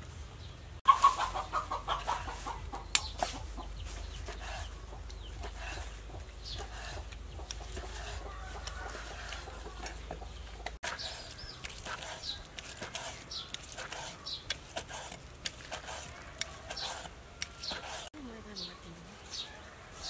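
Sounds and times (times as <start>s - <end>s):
chickens clucking: 0.8s - 15.1s.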